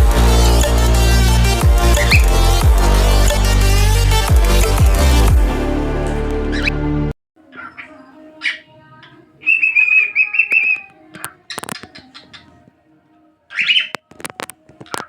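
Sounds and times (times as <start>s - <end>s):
cockatiel whistling: 9.4s - 10.9s.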